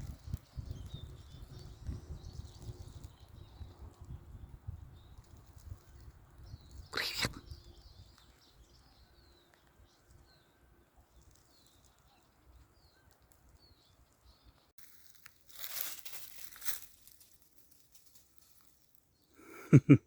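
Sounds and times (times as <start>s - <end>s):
rustling noise: 14.8s - 18.9s.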